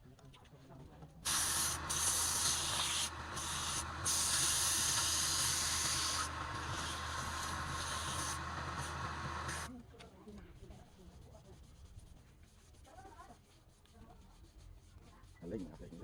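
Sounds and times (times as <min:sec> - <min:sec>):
lathe motor hum: 0:01.3 - 0:09.7
wood hissing on lathe: 0:01.3 - 0:09.7.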